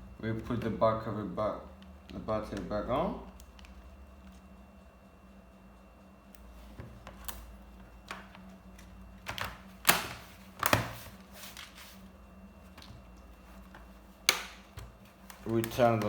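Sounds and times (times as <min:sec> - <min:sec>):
plastic clicks of laptop reassembly: 0:07.0 - 0:11.0, 0:13.7 - 0:16.0.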